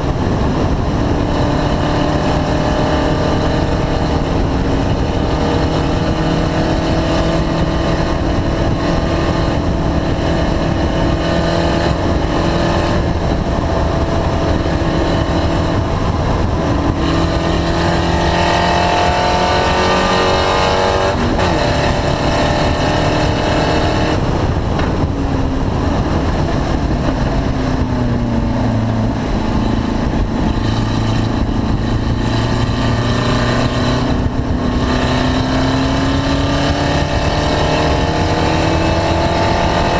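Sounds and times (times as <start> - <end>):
race car engine revving: 0.0 - 39.9.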